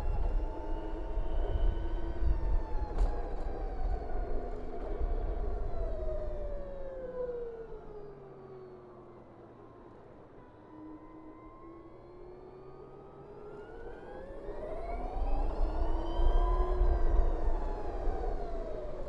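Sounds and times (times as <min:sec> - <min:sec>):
wind rumble on microphone: 0:00.0 - 0:07.8, 0:14.2 - 0:19.0
electric scooter motor whine: 0:00.0 - 0:19.0.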